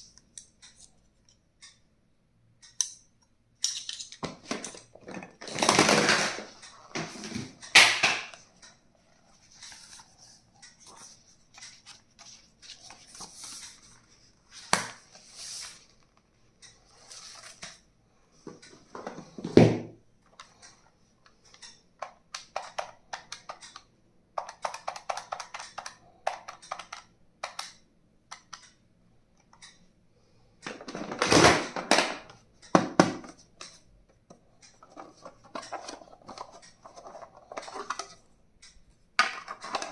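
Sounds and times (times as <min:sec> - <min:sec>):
plastic packaging clicks and rustling: 0:03.9 - 0:08.4, 0:39.2 - 0:39.9.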